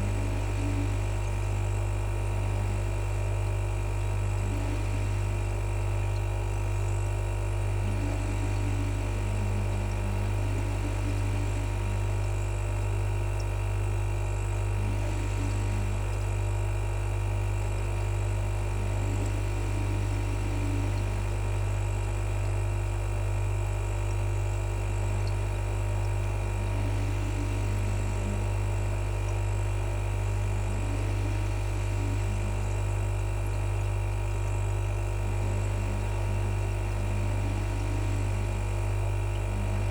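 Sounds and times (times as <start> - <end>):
electric fan whirring: 0.0 - 39.9
low hum: 7.8 - 12.4, 35.4 - 39.9.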